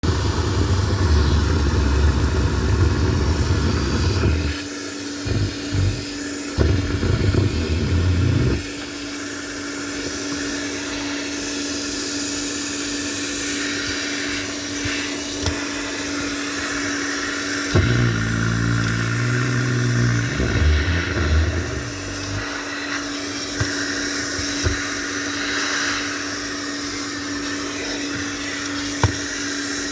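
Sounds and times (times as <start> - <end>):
heavy low rumble: 0.0 - 4.6, 17.8 - 22.4
vacuum motor whine and hiss: 0.0 - 29.9.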